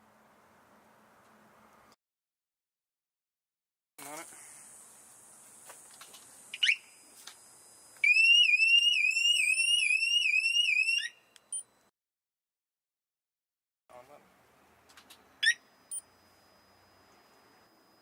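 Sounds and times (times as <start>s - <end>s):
alarm siren rising sweeps: 8.0s - 11.2s
short beep: 11.1s - 11.9s
short alarm chirp: 15.2s - 18.0s.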